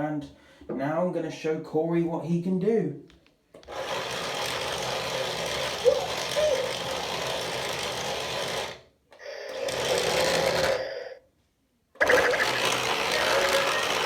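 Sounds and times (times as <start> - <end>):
small electric motor whirring: 3.7 - 11.2, 12.0 - 14.0.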